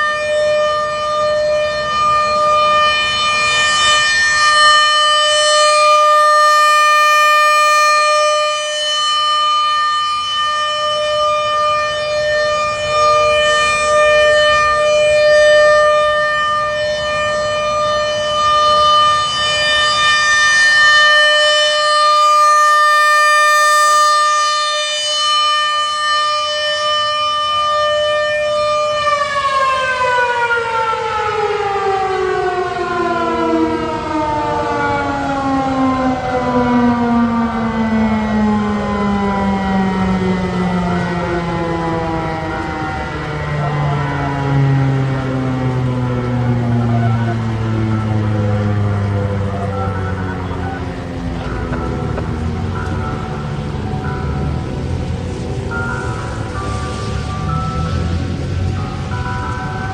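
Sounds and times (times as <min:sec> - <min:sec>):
outdoor warning siren: 0:00.0 - 0:59.9.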